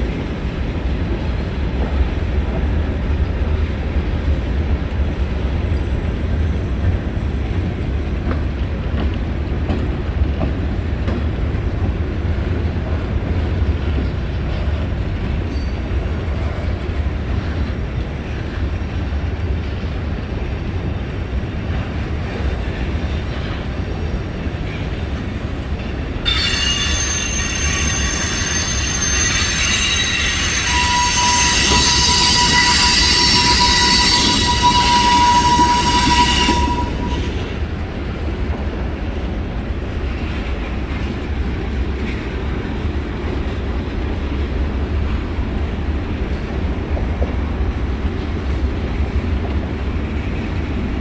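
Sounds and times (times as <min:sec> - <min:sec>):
train wheels rumbling on rail: 0:00.0 - 0:51.0
train wheels squealing: 0:15.2 - 0:16.6, 0:26.2 - 0:37.6.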